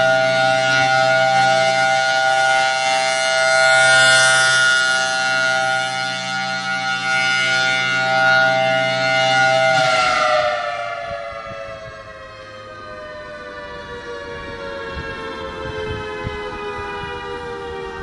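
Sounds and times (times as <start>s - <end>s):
warning siren steady tone: 0.0s - 18.0s.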